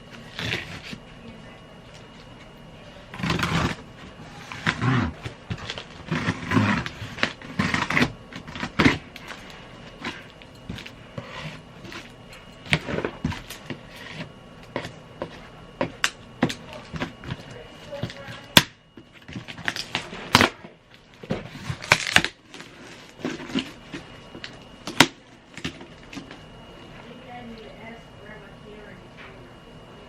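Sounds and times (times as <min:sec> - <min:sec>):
cardboard scraping and rustling: 0:03.1 - 0:12.1.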